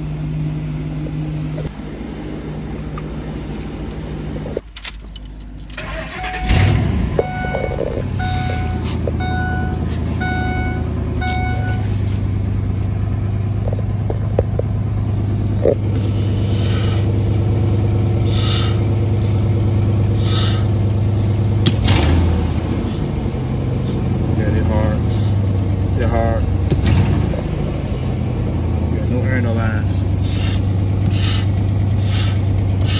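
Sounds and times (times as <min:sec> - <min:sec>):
truck engine idling: 0:00.0 - 0:32.9
warning chime: 0:05.8 - 0:12.0
short hisses: 0:15.9 - 0:17.2, 0:18.2 - 0:24.2, 0:25.0 - 0:25.5, 0:27.4 - 0:28.3, 0:30.2 - 0:32.9.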